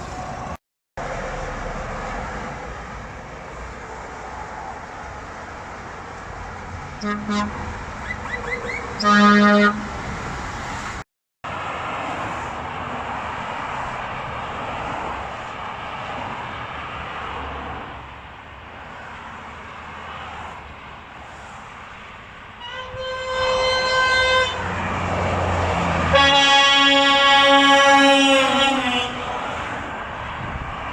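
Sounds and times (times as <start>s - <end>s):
road traffic noise: 0.0s - 30.9s
higher-pitched horn: 7.0s - 10.0s, 22.6s - 24.7s, 26.1s - 29.4s
truck air horn blast: 7.0s - 10.0s, 22.6s - 24.8s, 26.0s - 29.5s.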